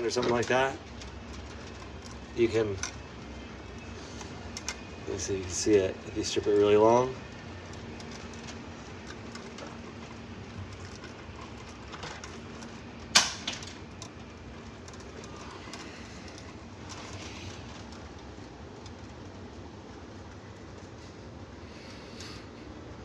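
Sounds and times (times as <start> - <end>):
faint steady hum: 0.0 - 23.0
wire stripper snapping: 13.2 - 13.8.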